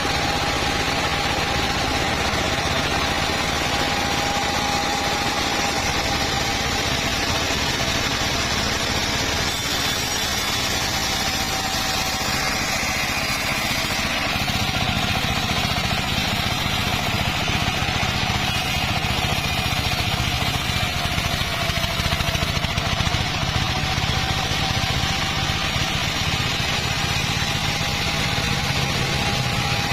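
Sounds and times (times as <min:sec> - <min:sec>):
engine drone: 0:00.0 - 0:29.9
hiss of saw cutting wood: 0:00.0 - 0:29.9
saw blade whine: 0:00.0 - 0:29.9.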